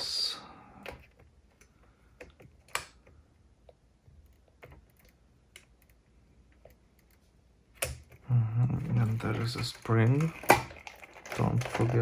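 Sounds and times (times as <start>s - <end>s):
small mechanism parts clicking: 9.0s - 12.0s.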